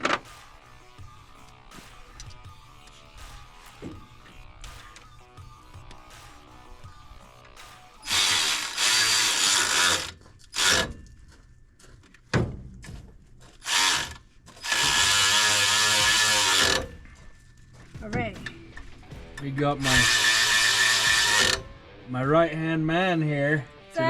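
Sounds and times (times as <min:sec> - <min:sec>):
power tool driving bolts: 0:08.0 - 0:11.1, 0:13.6 - 0:17.0, 0:19.8 - 0:21.8.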